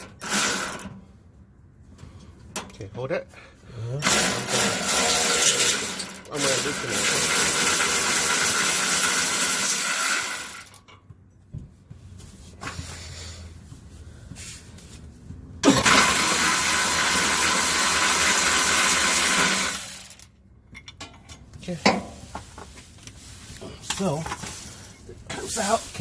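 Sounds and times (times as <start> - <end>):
air wrench running: 0.0 - 1.0, 4.0 - 10.8, 15.6 - 20.3
handling of tools and parts: 19.9 - 26.0.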